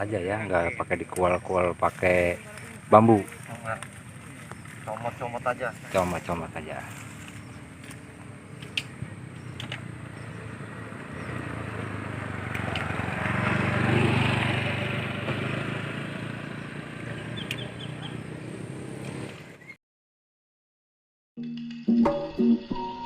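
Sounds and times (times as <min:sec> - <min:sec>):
vehicle engine passing by: 0:00.0 - 0:19.7.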